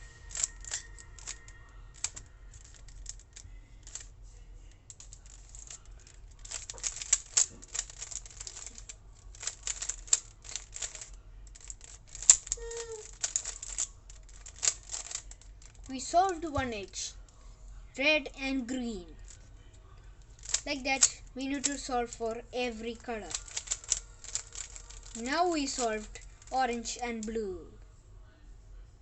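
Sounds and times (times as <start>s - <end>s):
puzzle cube clicking and rattling: 0.0s - 4.1s, 4.9s - 17.1s, 20.2s - 27.4s.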